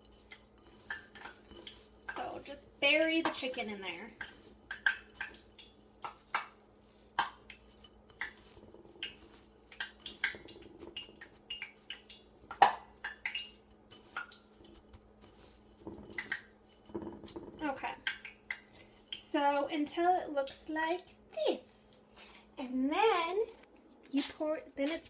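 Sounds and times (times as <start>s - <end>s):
utensil clinking against bowl: 0.0s - 19.3s.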